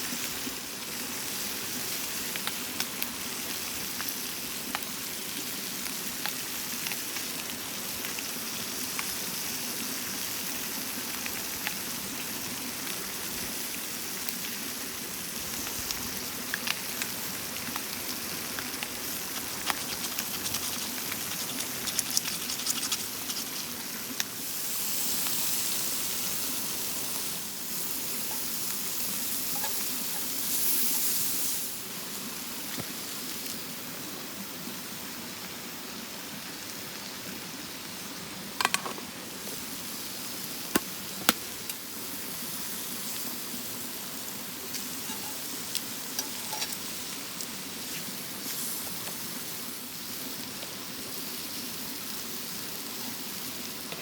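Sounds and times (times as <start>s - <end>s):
food sizzling in a pan: 0.0s - 35.0s, 35.8s - 54.0s
oil popping and crackling: 13.5s - 25.4s, 39.4s - 42.0s, 44.6s - 49.3s.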